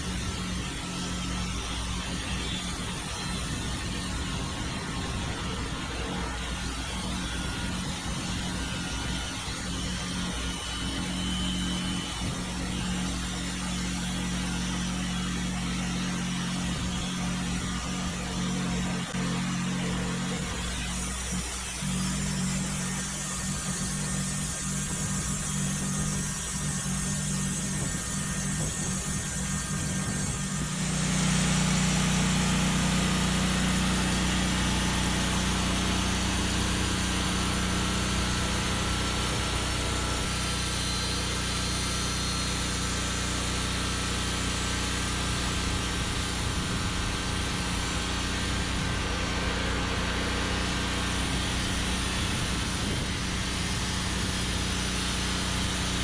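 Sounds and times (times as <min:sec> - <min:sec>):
small gasoline engine running: 0:00.0 - 0:56.0
hiss: 0:16.5 - 0:31.9.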